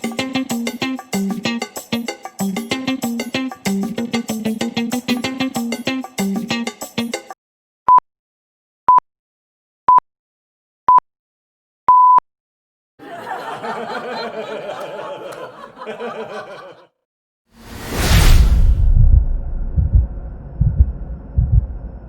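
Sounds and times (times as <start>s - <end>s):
guitar music: 0.0s - 7.3s
laughter: 13.0s - 16.9s.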